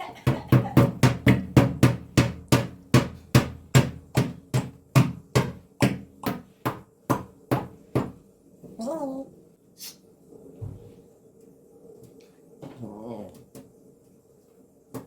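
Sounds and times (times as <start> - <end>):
rapid sharp knocks: 0.3 - 8.2.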